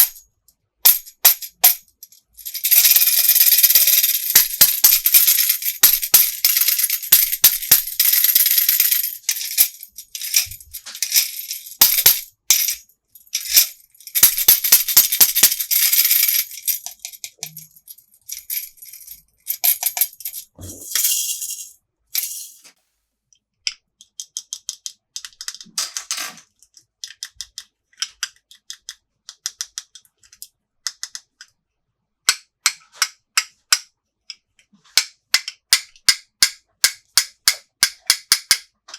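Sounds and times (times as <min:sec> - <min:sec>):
plastic pieces rattling: 0:01.3 - 0:22.6.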